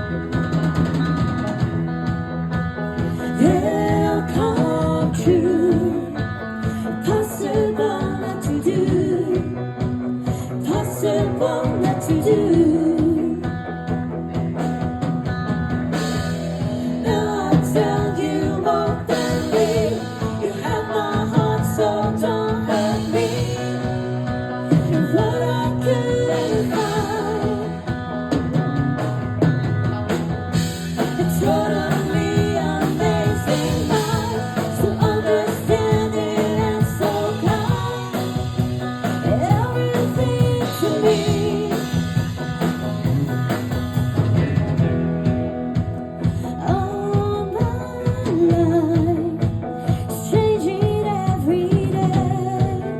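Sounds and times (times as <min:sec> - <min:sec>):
rock band playing: 0:00.0 - 0:52.9
person singing: 0:03.1 - 0:09.8, 0:10.5 - 0:13.4, 0:16.9 - 0:28.0, 0:31.0 - 0:42.1.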